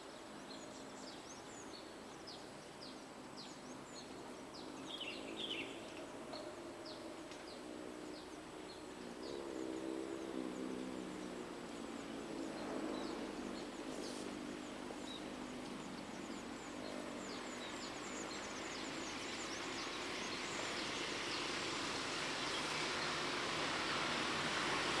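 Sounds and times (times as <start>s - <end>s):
steady outdoor hiss: 0.0s - 25.0s
approaching train rushing: 17.4s - 25.0s.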